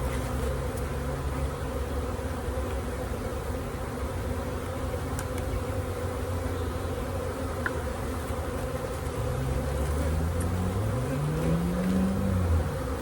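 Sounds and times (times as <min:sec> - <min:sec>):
bees buzzing: 0:00.0 - 0:13.0
low hum rising in pitch: 0:09.2 - 0:13.0.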